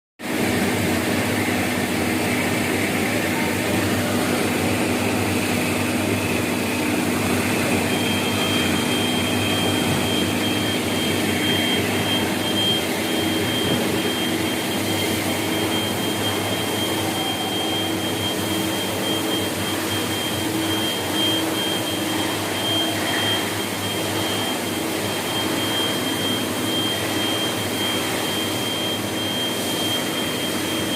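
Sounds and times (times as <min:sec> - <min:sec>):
high steady whine: 0:00.2 - 0:30.9
metal cutting machine running: 0:00.3 - 0:30.9.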